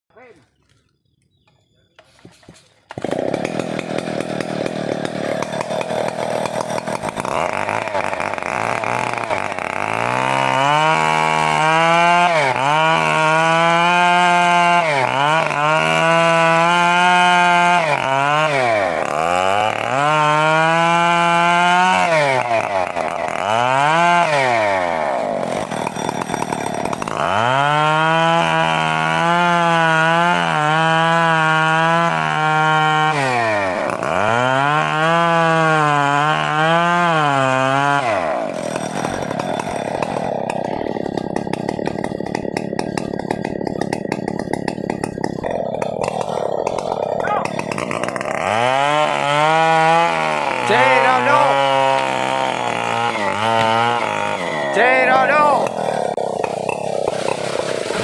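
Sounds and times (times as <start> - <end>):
chainsaw cutting wood: 2.0 - 58.0.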